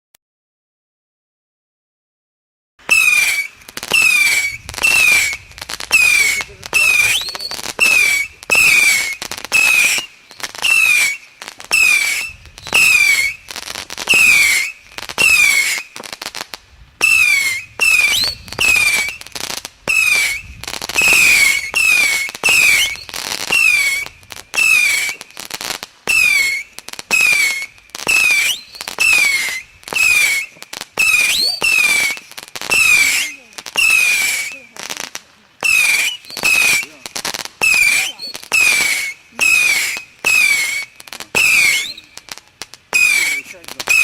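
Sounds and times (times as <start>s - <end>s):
firework battery firing: 2.8s - 44.0s
short falling whistle: 2.9s - 13.4s, 17.0s - 25.3s, 26.1s - 34.5s, 37.6s - 42.2s.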